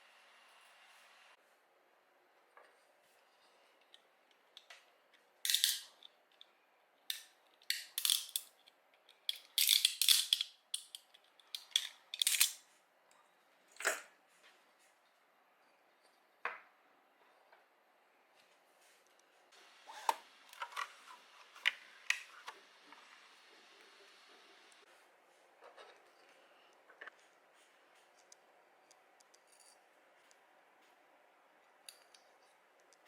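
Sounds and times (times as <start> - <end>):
plastic parts clicking and snapping: 7.1 - 12.6.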